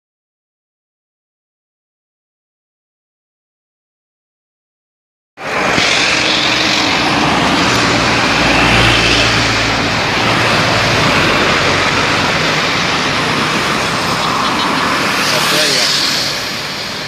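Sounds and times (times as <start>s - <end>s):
bus engine hum: 5.4s - 17.0s
road noise rushing: 5.4s - 17.0s.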